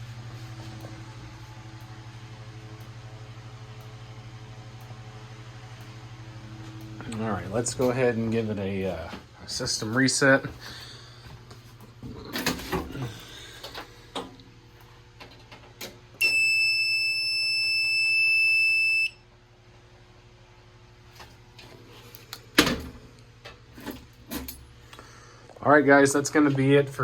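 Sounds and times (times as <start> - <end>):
high-pitched buzzer beep: 16.2 - 19.2.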